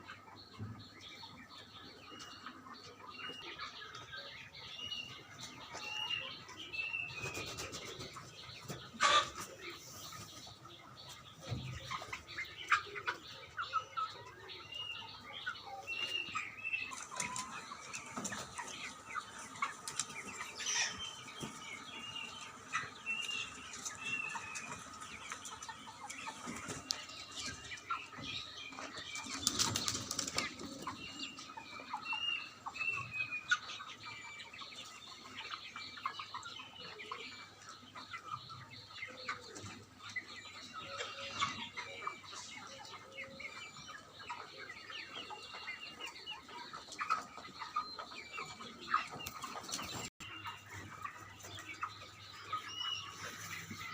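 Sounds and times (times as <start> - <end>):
chickens cheeping and clucking: 0.0 - 53.9
chickens scratching: 7.0 - 10.7, 16.0 - 31.3, 48.7 - 53.9
wings flapping: 29.4 - 30.6.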